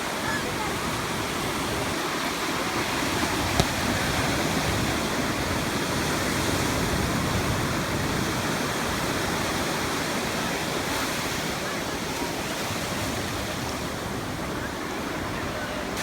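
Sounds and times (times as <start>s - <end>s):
ocean surf rushing: 0.0s - 16.0s.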